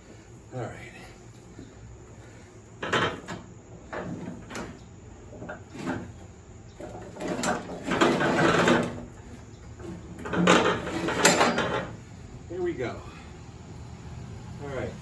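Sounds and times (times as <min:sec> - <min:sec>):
metal clanks and knocks: 0:02.8 - 0:12.2
metal scraping and dragging: 0:07.0 - 0:12.9.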